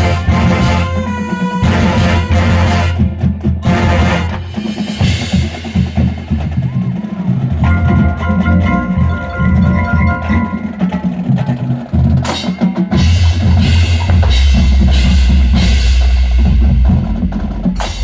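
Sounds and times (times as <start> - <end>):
drums and percussion: 0.0 - 18.0
marching band playing: 0.0 - 18.0.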